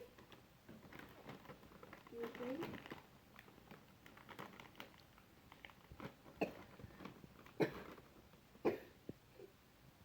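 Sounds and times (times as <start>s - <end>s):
person coughing: 7.6s - 7.9s, 8.6s - 9.5s.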